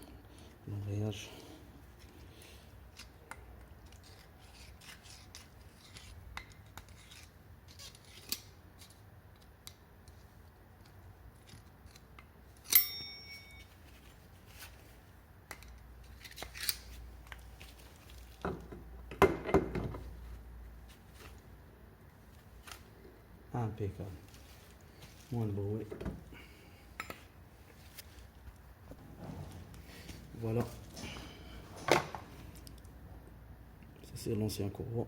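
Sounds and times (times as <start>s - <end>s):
ringing metal clink: 12.6s - 13.7s.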